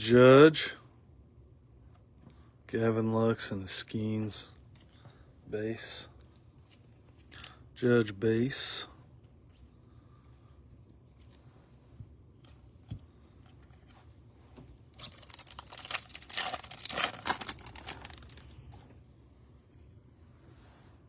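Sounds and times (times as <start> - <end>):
foil wrapper tearing and crinkling: 14.9 - 18.6.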